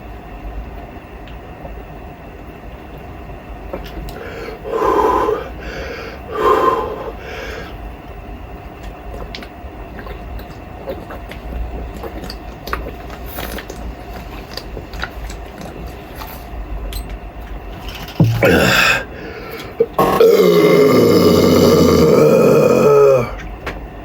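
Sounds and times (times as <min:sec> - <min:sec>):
wet swallowing clicks: 0:03.7 - 0:05.2, 0:08.8 - 0:16.2, 0:18.2 - 0:23.5
person gulping water: 0:03.7 - 0:05.8, 0:08.8 - 0:16.0, 0:18.2 - 0:23.5
person gasping for breath: 0:04.2 - 0:07.8, 0:18.2 - 0:20.9.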